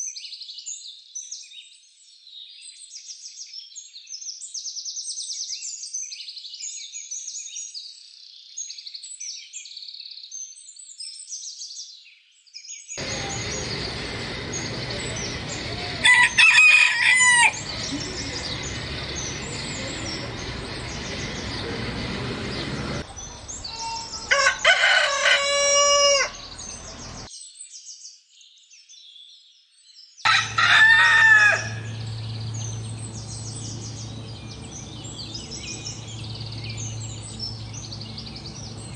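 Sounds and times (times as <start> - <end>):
small birds chirping: 12.6 - 29.4, 30.0 - 38.9
rooster crowing: 13.0 - 27.3, 30.3 - 38.9.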